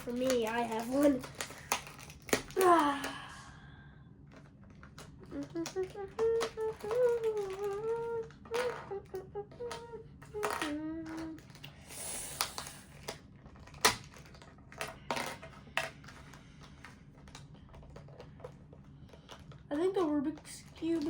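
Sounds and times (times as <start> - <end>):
plastic puzzle cube clicks: 0.0 - 2.7, 4.3 - 11.7, 12.3 - 18.5
person humming: 5.2 - 12.8.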